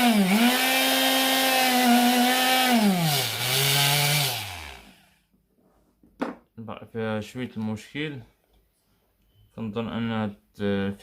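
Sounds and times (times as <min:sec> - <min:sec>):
blender motor running: 0:00.0 - 0:05.0.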